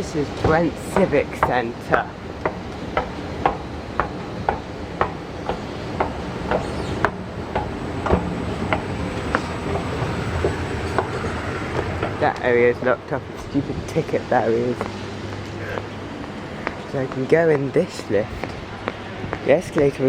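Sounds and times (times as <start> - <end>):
urban background noise: 0.0 - 20.0
footsteps on hard surface: 14.7 - 19.9.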